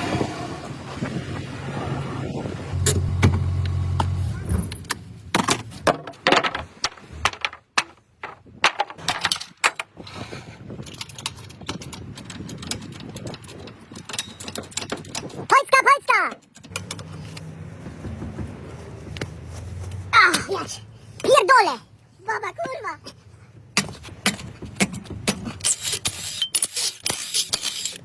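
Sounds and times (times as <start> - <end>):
sharp metallic clicks and knocks: 10.8 - 19.3, 23.7 - 28.0.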